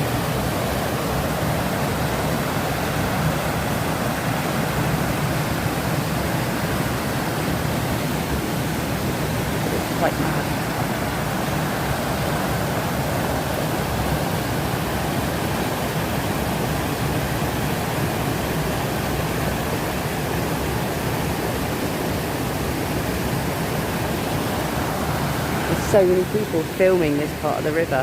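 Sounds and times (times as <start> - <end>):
waterfall rushing: 0.0 - 28.0.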